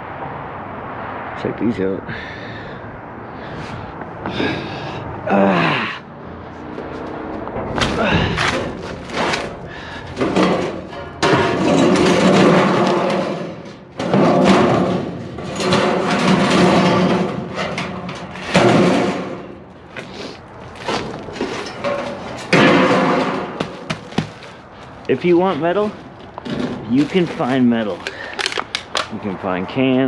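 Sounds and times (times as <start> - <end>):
scrap steel clanking and scraping: 6.4 - 29.2.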